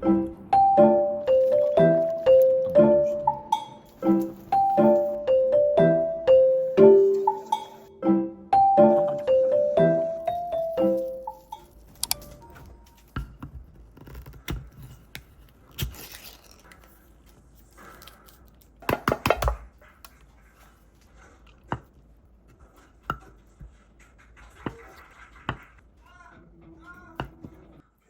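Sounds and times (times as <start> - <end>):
utensils and packaging clicks: 11.4 - 20.2.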